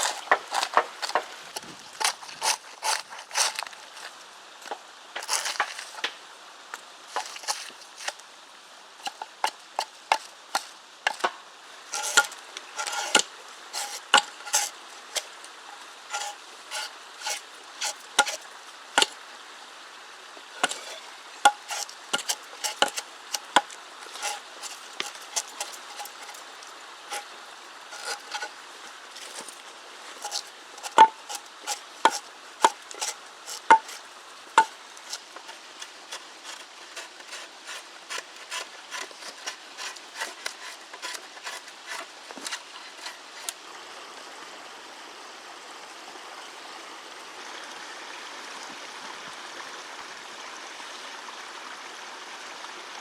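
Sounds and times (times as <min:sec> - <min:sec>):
bark scraped off wooden poles: 0:00.0 - 0:06.2, 0:07.1 - 0:08.2, 0:09.0 - 0:11.3, 0:11.9 - 0:19.2, 0:20.6 - 0:43.6.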